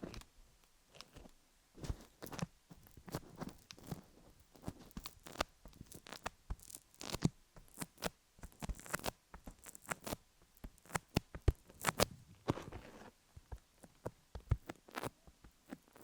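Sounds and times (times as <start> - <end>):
tacky clicks and crackles on microphone: 2.2 - 12.6.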